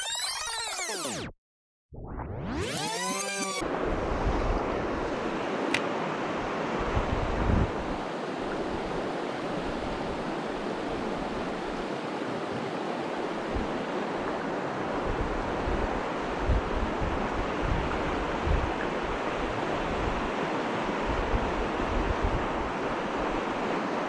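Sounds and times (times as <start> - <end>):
wind thumping on microphone: 6.8 - 8.0, 15.0 - 20.3.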